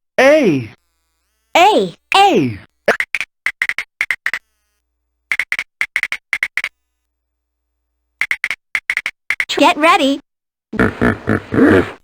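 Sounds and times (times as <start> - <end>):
toy voice stuttering blips: 1.6 - 4.4, 8.2 - 10.2.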